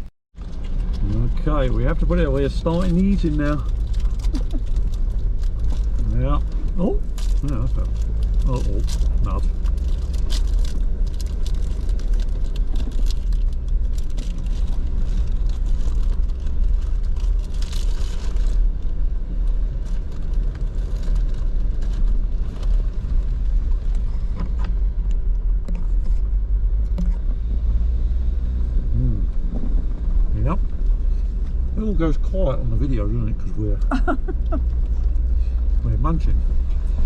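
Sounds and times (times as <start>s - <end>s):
engine and tyre rumble: 0.0s - 37.0s
crackling and clicking: 2.1s - 25.8s.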